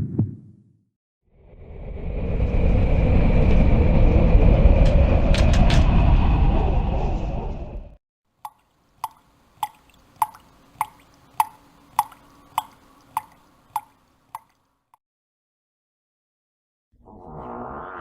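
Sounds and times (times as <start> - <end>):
water dripping: 8.3 - 15.0.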